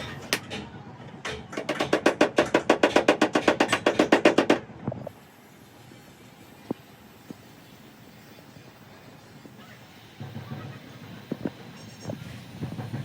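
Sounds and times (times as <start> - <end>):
rapid sharp knocks: 1.6 - 4.6.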